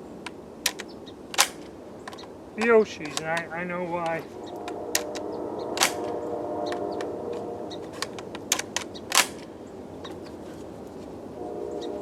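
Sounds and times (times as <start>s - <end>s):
steady hum: 0.0s - 10.3s
shotgun metallic clicks: 0.2s - 3.5s, 4.1s - 7.1s, 7.8s - 9.5s.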